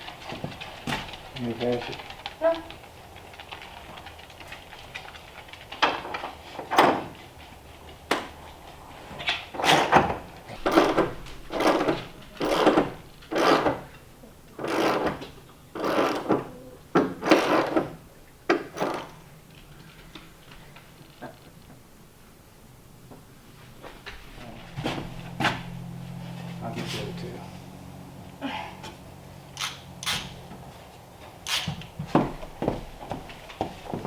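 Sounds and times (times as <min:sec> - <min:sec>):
hand tool rasping wood: 0:09.4 - 0:14.0, 0:14.6 - 0:19.2, 0:24.5 - 0:34.0.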